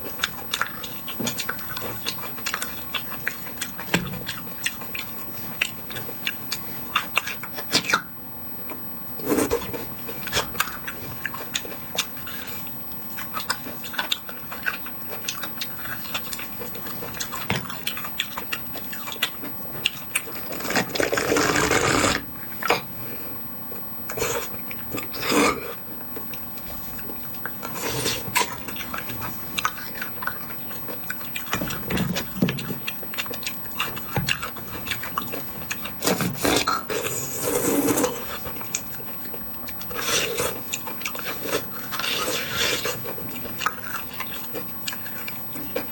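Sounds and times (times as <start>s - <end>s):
wet chewing clicks: 9.3s - 22.8s, 26.2s - 36.9s, 38.2s - 45.9s
noisy sucking: 20.5s - 22.2s.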